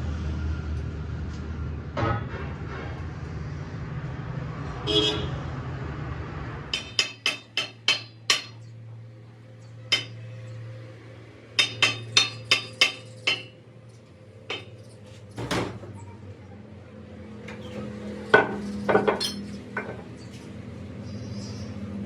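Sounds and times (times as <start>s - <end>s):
hammer ringing on steel: 6.8s - 8.6s, 11.6s - 13.5s.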